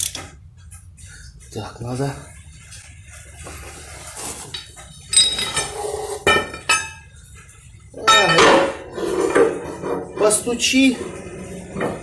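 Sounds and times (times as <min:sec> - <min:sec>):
steel tools clinking: 0:04.5 - 0:07.0, 0:08.0 - 0:08.8.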